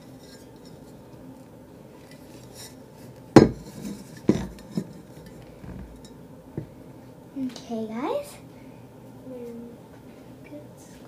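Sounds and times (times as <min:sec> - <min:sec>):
pots knocking: 0:03.4 - 0:06.1.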